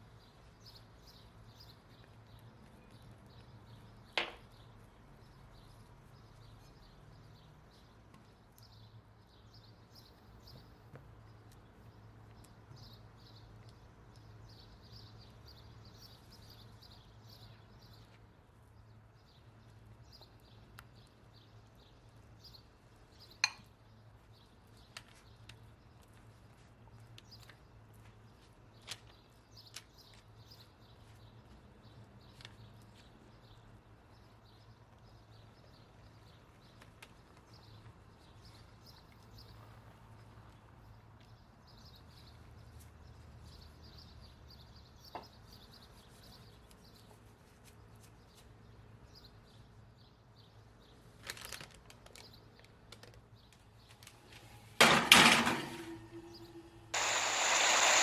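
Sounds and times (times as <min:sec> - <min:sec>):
low steady hum: 0:55.6 - 0:58.0.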